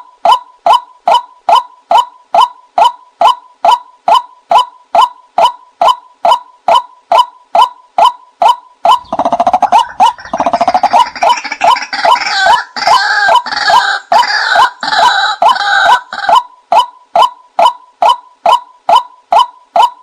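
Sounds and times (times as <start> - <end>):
waterhen kwak calls: 8.4 - 20.0
harsh rapid chattering chorus: 8.9 - 16.4.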